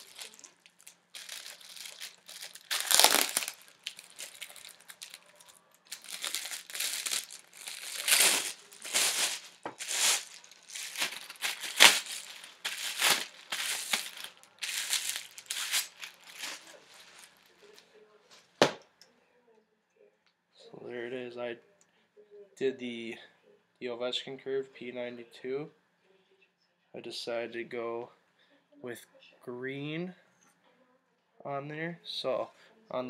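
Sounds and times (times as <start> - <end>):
packaging crinkling and rustling: 0.0 - 17.8.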